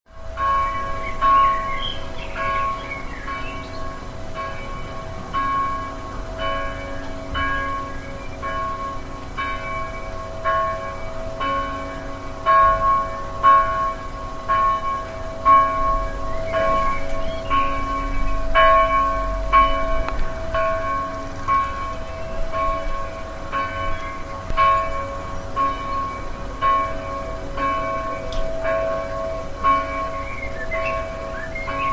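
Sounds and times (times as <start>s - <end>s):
church bell tolling: 0.1s - 31.9s.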